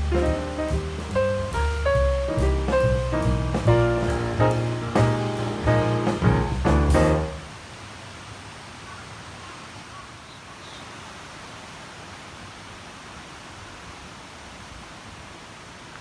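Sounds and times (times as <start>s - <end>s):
rushing outdoor background noise: 0.0s - 9.8s.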